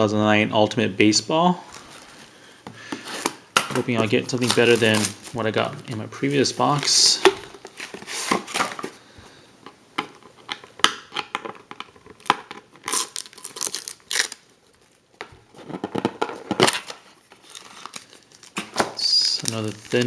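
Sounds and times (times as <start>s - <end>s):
wrapping tearing and crinkling: 4.3s - 5.4s, 12.1s - 15.0s, 16.6s - 20.0s.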